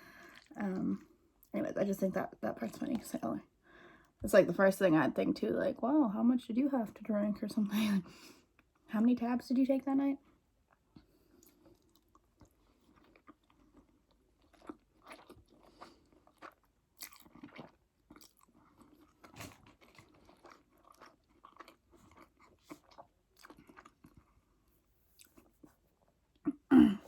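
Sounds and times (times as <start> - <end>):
person crunching and chewing: 11.3 - 26.1.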